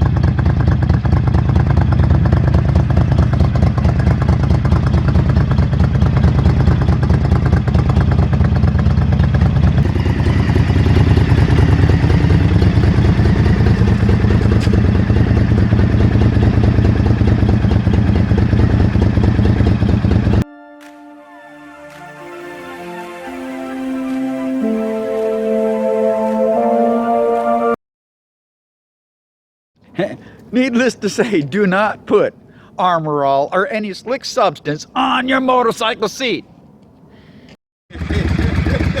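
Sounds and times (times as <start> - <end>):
motorcycle engine running: 0.0 - 20.4, 37.9 - 39.0.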